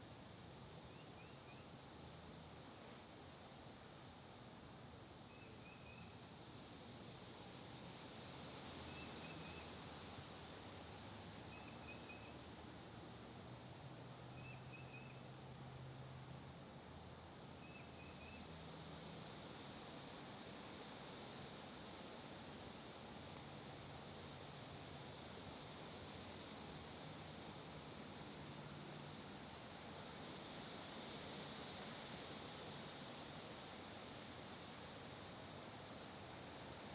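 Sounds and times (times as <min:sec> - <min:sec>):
high-pitched hiss: 0:00.0 - 0:36.9.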